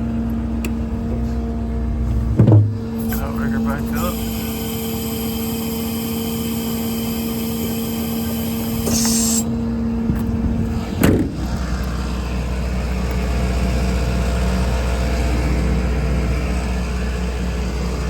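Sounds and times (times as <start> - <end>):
low steady rumble: 0.0 - 4.0, 9.4 - 18.0
hydraulic whine: 0.0 - 18.0
metal clunk: 2.3 - 2.8
short hiss: 8.8 - 9.5.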